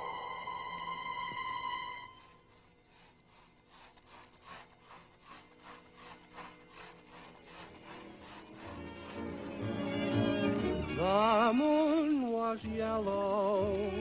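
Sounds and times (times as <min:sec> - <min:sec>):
held musical tone: 0:00.0 - 0:02.8, 0:05.6 - 0:11.8
rhythmic rasping scraping: 0:00.0 - 0:11.4.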